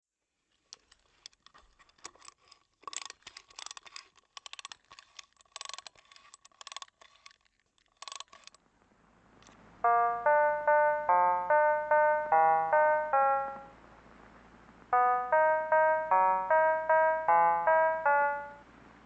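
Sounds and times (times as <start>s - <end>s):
crackling and clicking noise: 0.5s - 10.0s
faint hiss: 8.6s - 15.3s
electronic keyboard chords: 9.4s - 19.0s.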